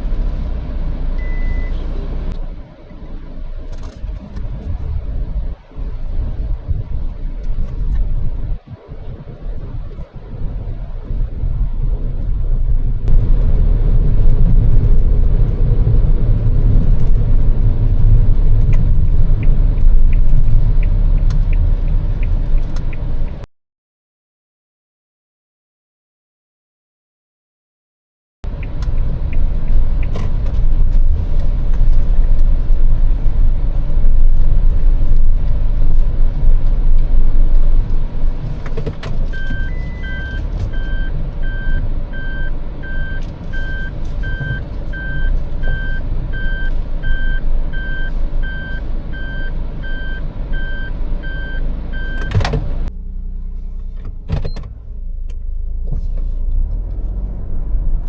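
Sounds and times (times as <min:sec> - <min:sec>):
car engine rumble from inside: 0:00.0 - 0:23.5, 0:28.4 - 0:58.0
in-car warning chime beeping: 0:01.2 - 0:01.8, 0:39.3 - 0:52.5.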